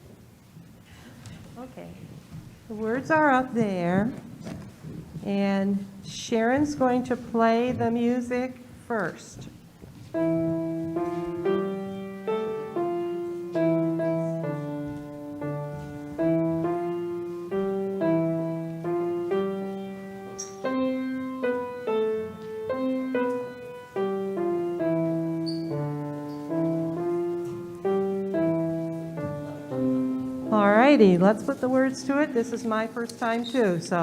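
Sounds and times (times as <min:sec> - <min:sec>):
piano playing hymn-like tune: 0:10.0 - 0:34.0.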